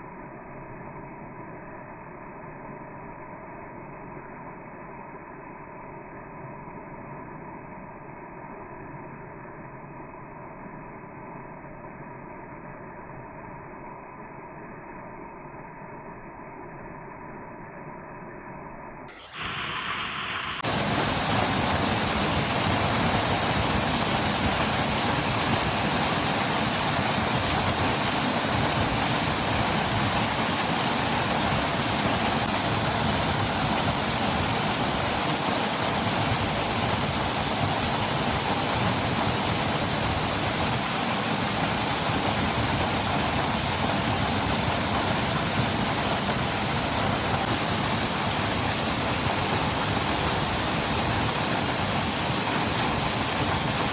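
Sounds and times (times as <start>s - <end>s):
waterfall rushing: 19.2s - 53.9s.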